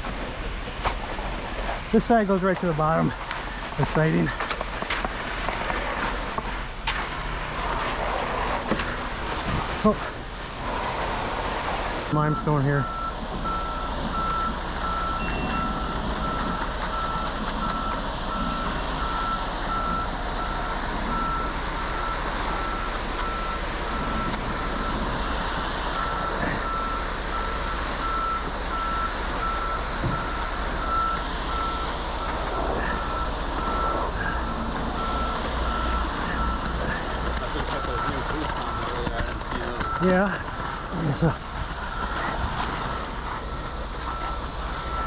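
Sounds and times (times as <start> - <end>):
engine running: 0.0 - 45.0
backup alarm beeping: 12.1 - 39.0, 41.8 - 45.0.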